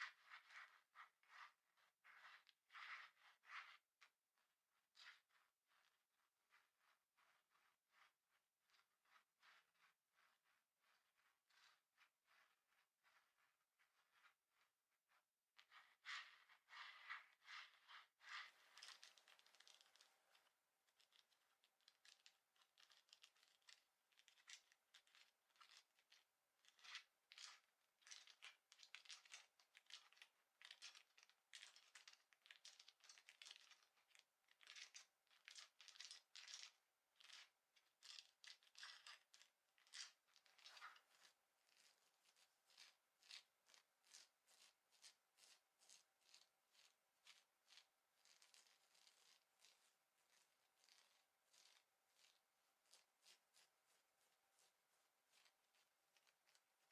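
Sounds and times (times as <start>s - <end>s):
scratching on clothing fabric: 0.0s - 21.6s, 38.6s - 56.9s.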